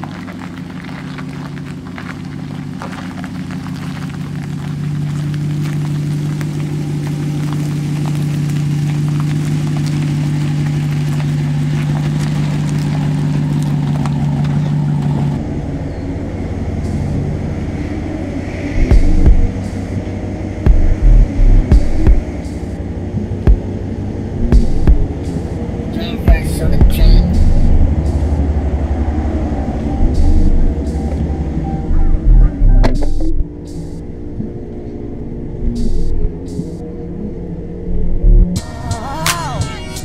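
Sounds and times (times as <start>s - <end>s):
truck engine droning: 0.0s - 40.0s
loud low thumps: 18.7s - 19.7s, 20.6s - 25.5s, 26.2s - 33.6s.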